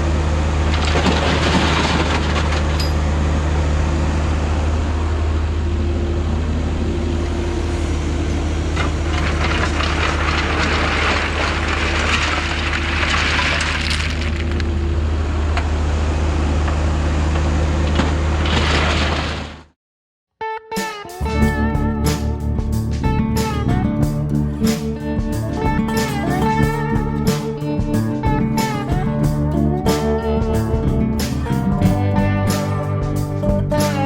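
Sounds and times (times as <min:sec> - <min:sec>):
diesel engine running: 0:00.0 - 0:19.2, 0:21.3 - 0:34.0
dirt and stone scraping: 0:00.7 - 0:03.1, 0:08.2 - 0:15.0, 0:18.4 - 0:19.6, 0:24.0 - 0:34.0.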